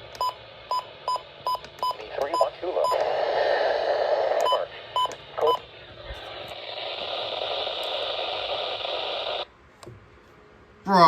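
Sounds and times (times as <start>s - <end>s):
radio static hiss: 1.9s - 9.5s.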